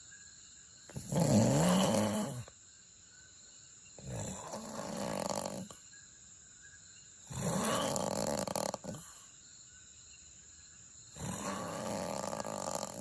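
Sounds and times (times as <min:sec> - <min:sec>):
man snoring: 0:00.9 - 0:02.5, 0:04.0 - 0:05.8, 0:07.3 - 0:09.1, 0:11.2 - 0:13.0.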